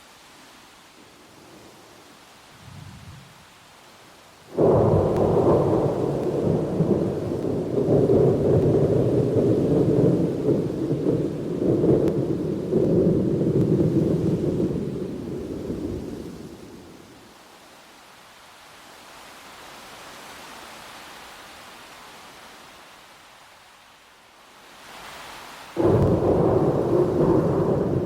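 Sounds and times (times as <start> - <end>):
rain hiss: 0.0 - 28.0
thunder crack and rumble: 4.6 - 16.8, 25.8 - 28.0.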